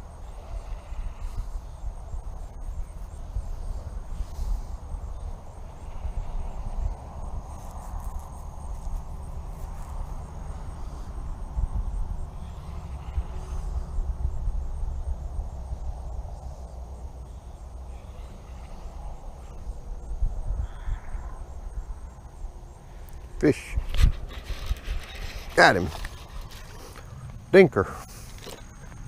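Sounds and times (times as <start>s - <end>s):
insects chirring: 0.0s - 29.0s.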